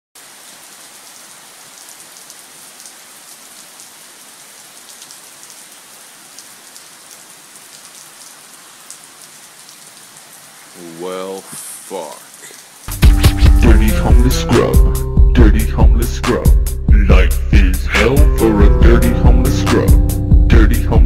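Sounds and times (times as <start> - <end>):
steady rain: 0.2 - 14.9.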